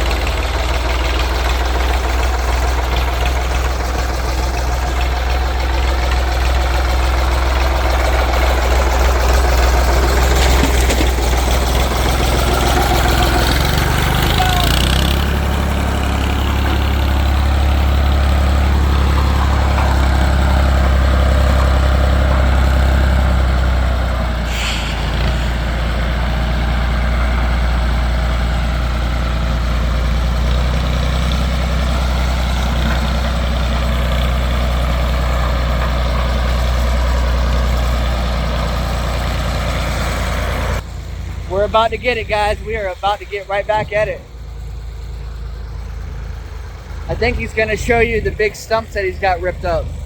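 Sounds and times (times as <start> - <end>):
tractor engine running: 0.0 - 50.0
short hiss: 24.5 - 25.7.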